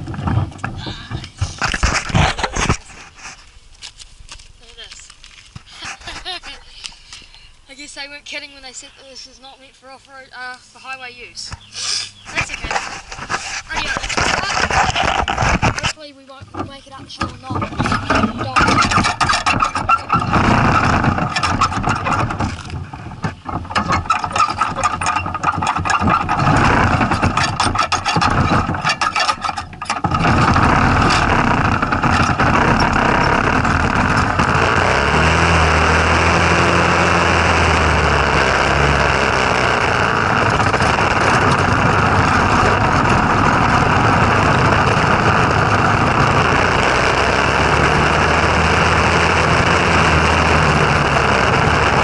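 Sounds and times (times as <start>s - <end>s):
go kart engine running: 10.7s - 52.0s.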